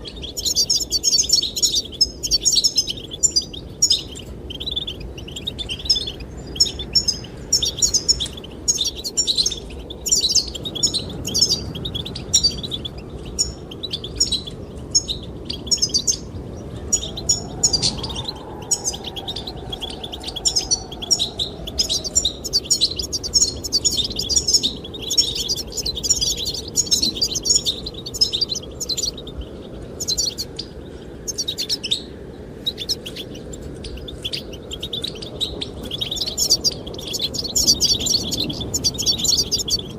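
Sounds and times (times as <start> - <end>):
finches twittering: 0.0 - 39.9
wind rushing: 15.3 - 31.4.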